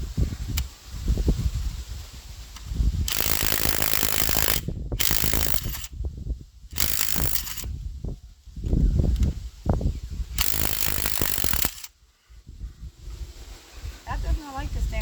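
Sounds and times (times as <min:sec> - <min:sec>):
socket ratchet clicking: 0:02.6 - 0:06.0, 0:06.7 - 0:07.7, 0:10.4 - 0:11.9.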